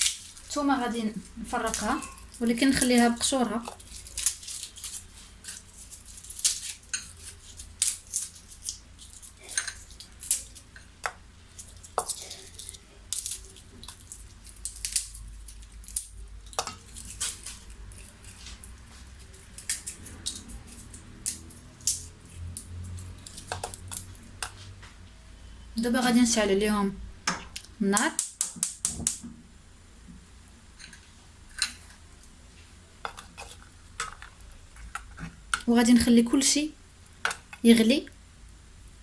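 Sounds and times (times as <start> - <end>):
garlic cloves clicking into saucepan: 27.3 - 29.2.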